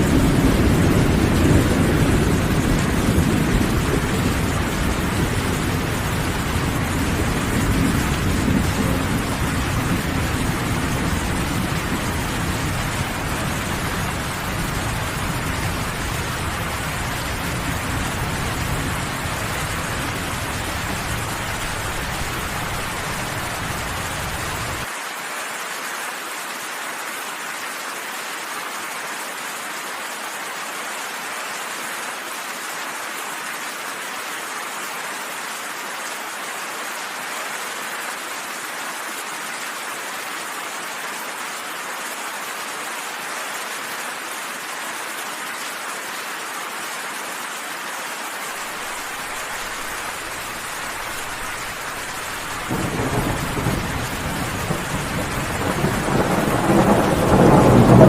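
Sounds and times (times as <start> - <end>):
loud thunderclap: 0.0 - 24.9, 50.9 - 58.0
thunder rumbling: 0.0 - 24.9, 48.6 - 58.0
heavy rain falling: 0.0 - 58.0.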